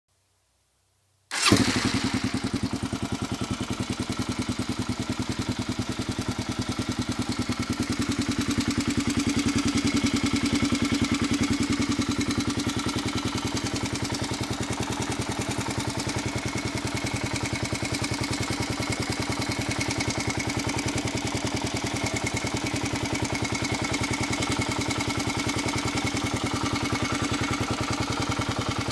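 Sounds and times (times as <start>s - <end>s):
engine ticking: 1.3s - 28.9s
motorcycle engine idling: 1.3s - 28.9s.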